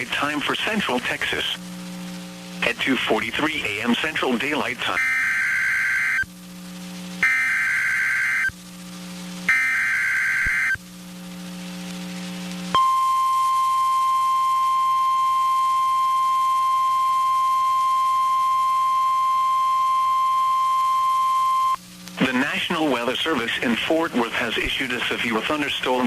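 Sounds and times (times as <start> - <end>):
low hum: 0.3 - 22.2
screeching digital data bursts: 3.6 - 6.3, 7.2 - 8.6, 9.5 - 10.8
steady warning alarm tone: 4.9 - 6.3, 7.2 - 8.6, 9.5 - 10.8, 12.7 - 21.8.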